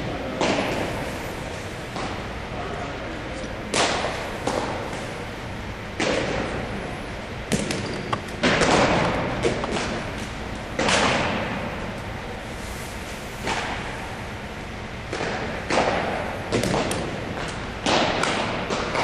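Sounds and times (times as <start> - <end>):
baseballs being hit and caught: 0.0 - 1.1, 1.9 - 2.4, 3.4 - 12.0, 13.3 - 14.0, 15.1 - 19.0.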